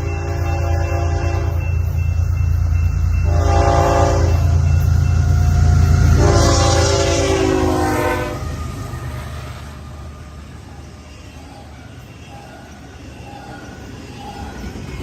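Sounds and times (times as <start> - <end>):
train air horn blasts: 0.0 - 1.6, 3.2 - 4.7, 6.0 - 8.8
train rumbling past: 0.0 - 15.0.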